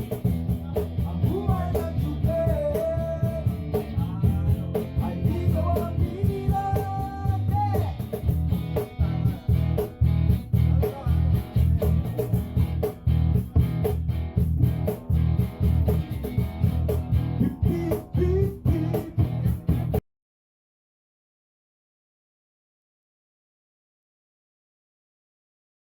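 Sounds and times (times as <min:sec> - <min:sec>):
person singing: 0:00.0 - 0:08.2, 0:17.4 - 0:19.5
guitars strummed: 0:00.0 - 0:20.0.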